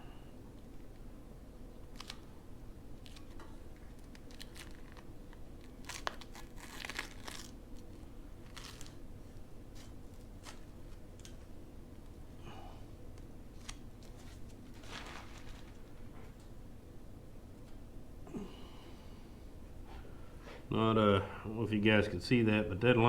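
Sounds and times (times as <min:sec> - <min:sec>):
tape peeling and crumpling: 0:01.9 - 0:02.4, 0:03.0 - 0:11.5, 0:13.1 - 0:16.5.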